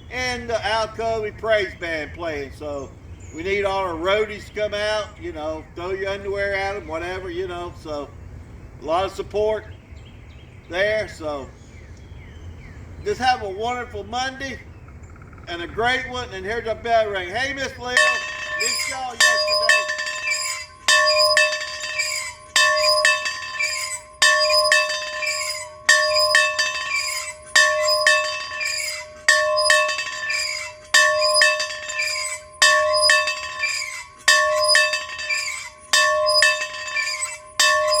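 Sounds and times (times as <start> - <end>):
light clinks: 17.8 - 38.0
bell strikes ringing: 17.9 - 38.0.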